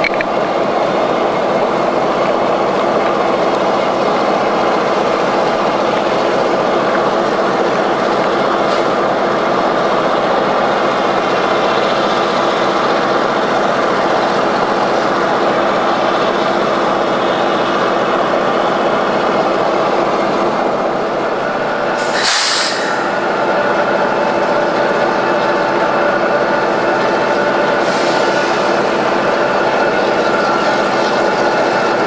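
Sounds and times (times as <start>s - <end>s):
diesel locomotive engines droning: 0.0s - 32.0s
brief hiss: 22.0s - 23.1s.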